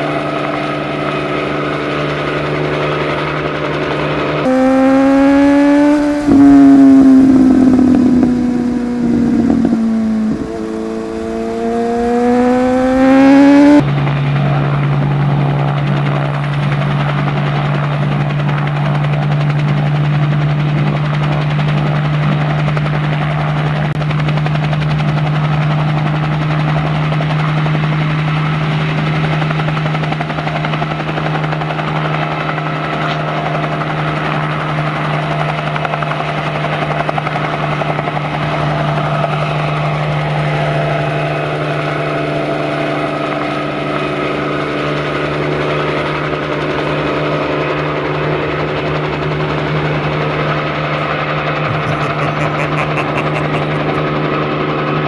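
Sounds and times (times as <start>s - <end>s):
helicopter rotor whir: 4.5s - 13.8s
motorcycle engine revving: 4.5s - 13.8s.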